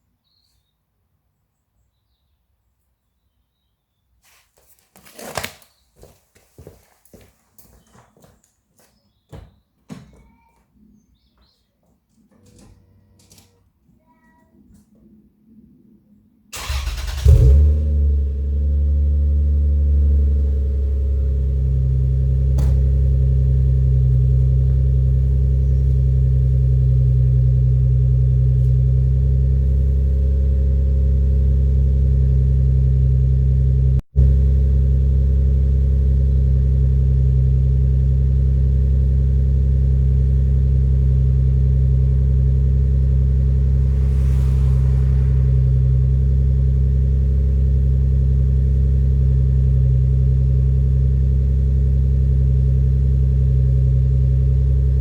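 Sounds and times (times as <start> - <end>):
car exhaust idling: 16.6 - 55.0.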